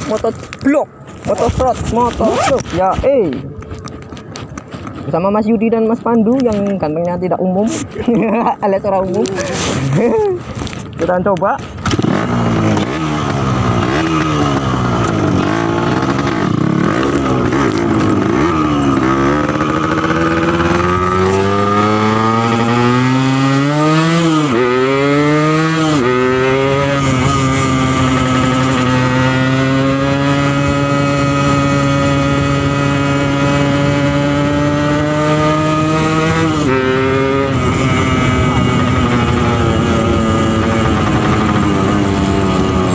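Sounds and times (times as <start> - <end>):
motorcycle engine revving: 1.2 - 2.9, 11.6 - 42.9.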